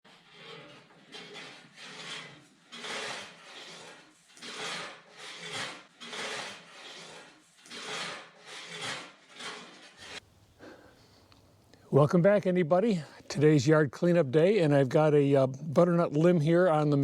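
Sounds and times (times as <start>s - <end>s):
rasping scraping strokes: 0.1s - 11.2s.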